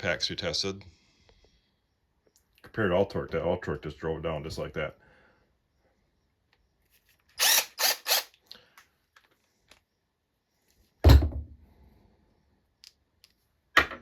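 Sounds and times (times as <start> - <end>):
cordless impact wrench bursts: 7.3 - 8.4.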